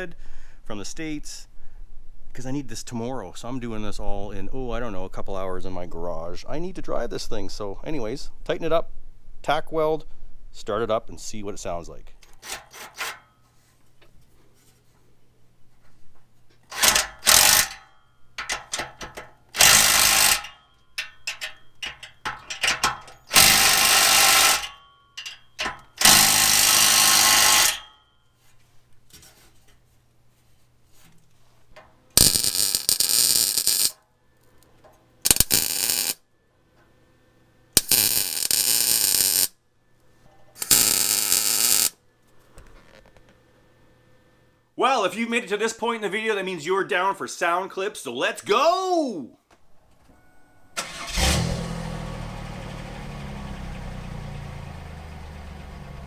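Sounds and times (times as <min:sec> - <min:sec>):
shop tool bursts: 0:16.7 - 0:28.1, 0:32.2 - 0:34.0, 0:35.2 - 0:36.2, 0:37.8 - 0:39.5, 0:40.6 - 0:42.0.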